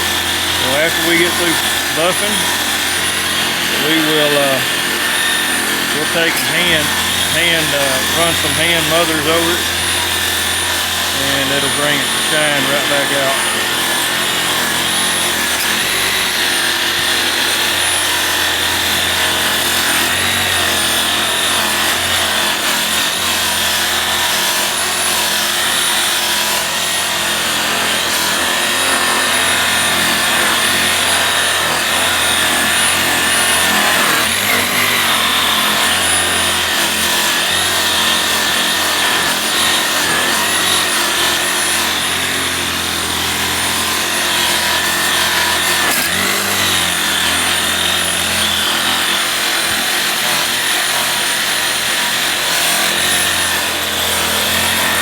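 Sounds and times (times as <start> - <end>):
buffing pad rubbing on metal: 0.0 - 10.3
buffer whining: 0.0 - 16.9.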